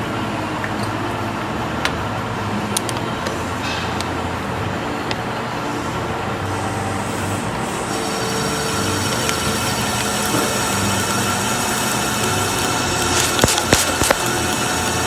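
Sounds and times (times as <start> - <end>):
machine tool motor whine: 6.5 - 15.0.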